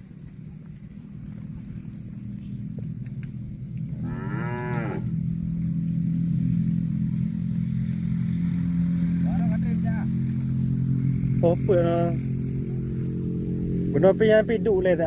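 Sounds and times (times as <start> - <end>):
steady low drone: 0.0 - 15.0
cow mooing: 3.9 - 5.2.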